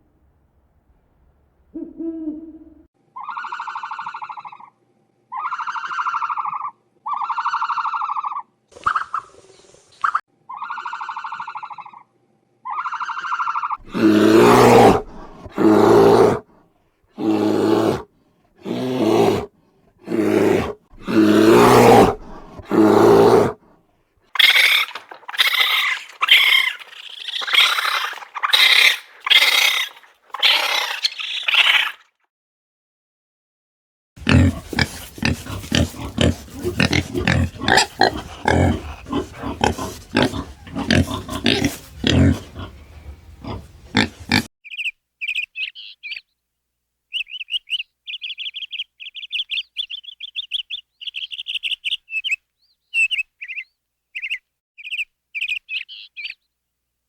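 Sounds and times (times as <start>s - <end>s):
deep farm animal calls: 1.8s - 9.3s, 10.5s - 16.4s, 17.2s - 23.6s, 24.4s - 32.0s, 34.2s - 46.2s
higher-pitched animal calls: 1.8s - 9.3s, 10.0s - 16.4s, 24.4s - 32.1s, 34.2s - 44.5s
pigs grunting: 12.8s - 16.4s, 17.2s - 23.6s, 24.4s - 32.1s, 34.2s - 44.5s.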